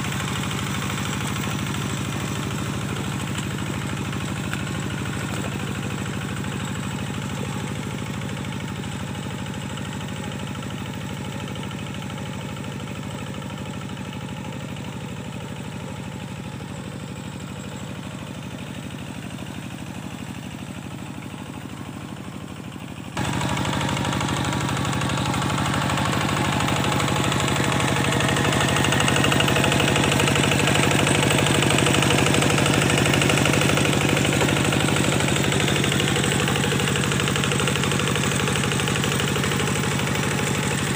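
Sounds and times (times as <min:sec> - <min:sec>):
tractor diesel engine running: 0:00.0 - 0:40.9.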